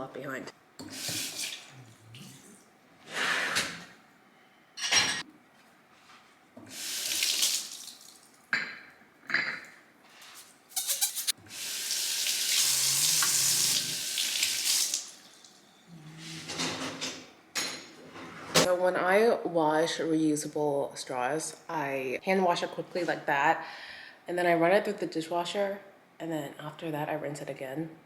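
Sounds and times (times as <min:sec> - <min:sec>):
kitchen tap running: 0:00.8 - 0:01.7, 0:06.6 - 0:08.4, 0:10.9 - 0:15.6.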